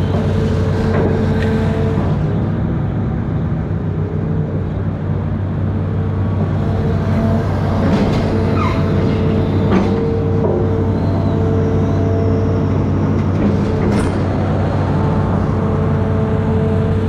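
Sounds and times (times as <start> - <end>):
diesel engine running under load: 0.0 - 17.0
short squeals and clanks: 6.8 - 12.7.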